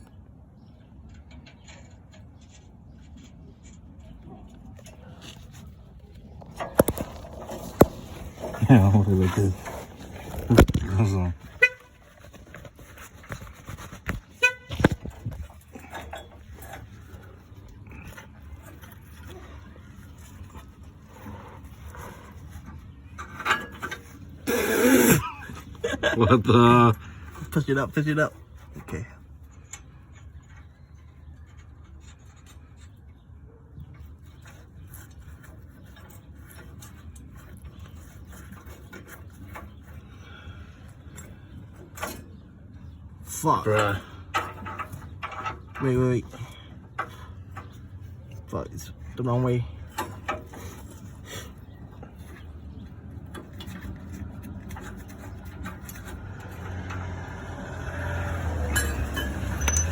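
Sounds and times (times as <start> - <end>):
metal parts scraping and knocking: 0.9 - 24.6, 40.8 - 49.2, 49.8 - 59.9.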